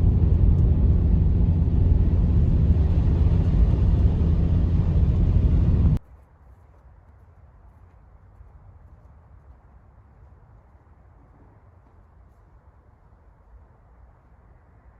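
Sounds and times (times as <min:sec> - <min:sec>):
loud low rumble: 0:00.0 - 0:06.0.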